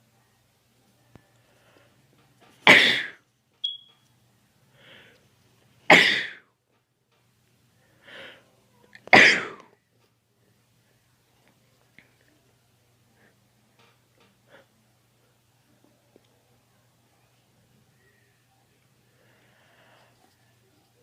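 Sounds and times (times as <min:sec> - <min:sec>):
man sneezing: 0:02.7 - 0:03.2, 0:05.9 - 0:06.4
intake of breath: 0:19.1 - 0:20.2.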